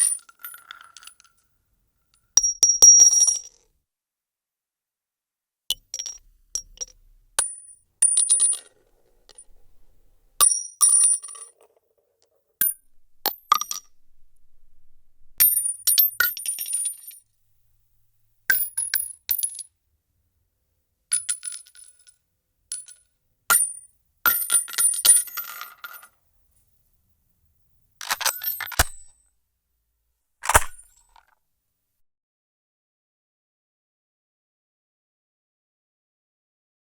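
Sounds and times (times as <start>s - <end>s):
shell casings clinking on floor: 2.4s - 3.6s, 5.7s - 11.6s, 12.6s - 17.2s, 28.0s - 29.1s, 30.4s - 31.0s.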